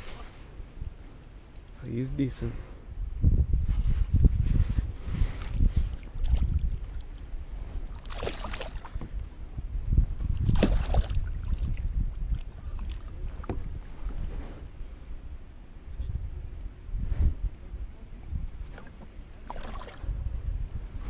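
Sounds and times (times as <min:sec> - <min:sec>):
wind buffeting microphone: 0:00.0 - 0:21.0
water splashes: 0:05.4 - 0:07.2, 0:07.9 - 0:09.1, 0:10.4 - 0:13.6, 0:18.6 - 0:20.2
water slapping against kayak hull: 0:08.0 - 0:09.2, 0:10.3 - 0:13.7.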